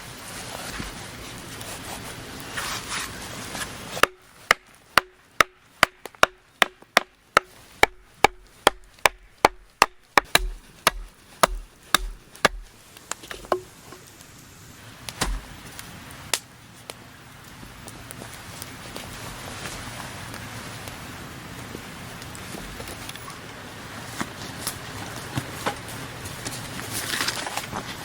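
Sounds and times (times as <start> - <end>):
hand tool chopping wood: 4.0 - 14.1.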